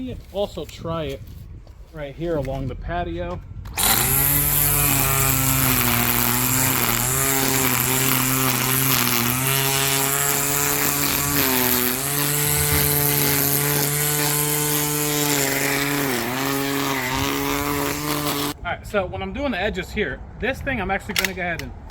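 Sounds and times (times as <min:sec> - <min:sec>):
electric string trimmer whining: 0:03.7 - 0:18.6.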